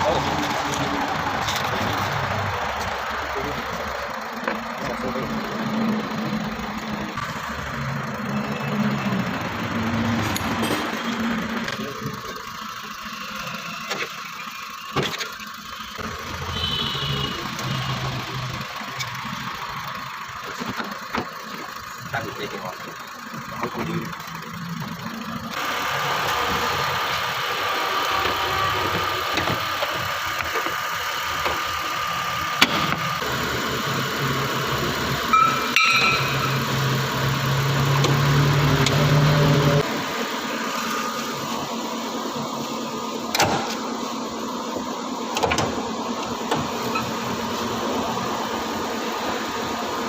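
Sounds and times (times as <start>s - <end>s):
engine running: 0.0s - 50.0s
sharp clicks and knocks: 45.3s - 47.1s.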